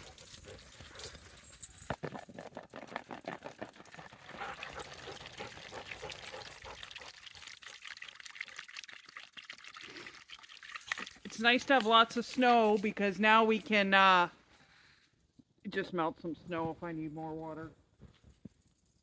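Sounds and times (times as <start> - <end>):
water pouring into a bowl: 3.9 - 11.5.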